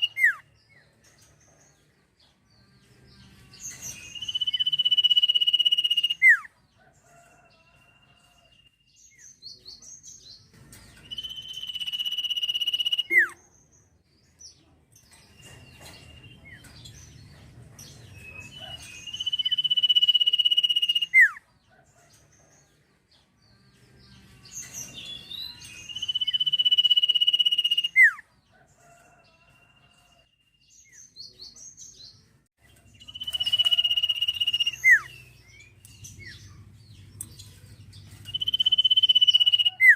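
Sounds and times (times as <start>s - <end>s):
songbird high whistles: 11.0s - 13.4s.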